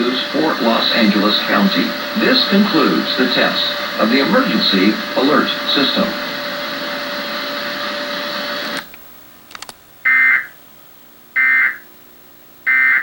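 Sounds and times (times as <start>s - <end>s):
steady hiss: 0.0s - 12.7s
faint hum: 0.0s - 13.0s
soft clicks: 8.8s - 9.8s
data tone bursts: 10.0s - 10.6s, 11.4s - 11.9s, 12.7s - 13.0s.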